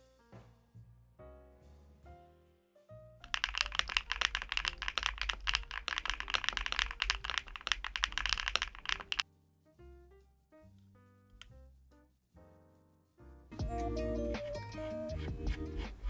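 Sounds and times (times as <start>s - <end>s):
mechanical keyboard typing: 3.2s - 9.2s
soft background music: 12.5s - 16.0s.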